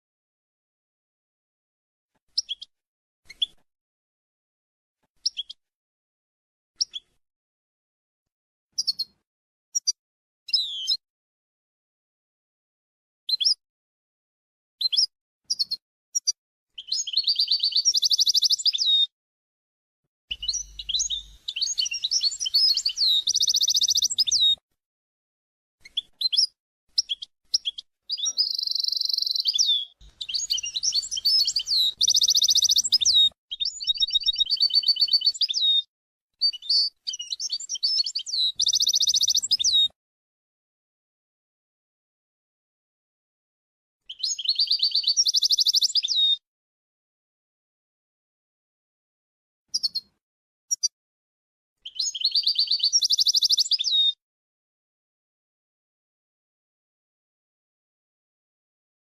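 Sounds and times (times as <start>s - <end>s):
bird chirping and trilling: 8.8s - 9.2s, 9.8s - 11.0s, 14.8s - 19.1s, 20.3s - 24.6s, 25.8s - 39.9s, 44.1s - 46.4s, 51.9s - 54.2s.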